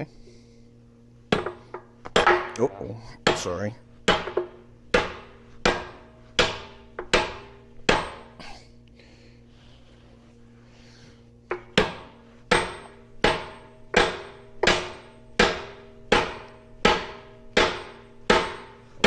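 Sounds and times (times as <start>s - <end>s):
low steady hum: 0.0s - 19.0s
hammer striking steel: 3.2s - 8.4s, 11.5s - 18.8s.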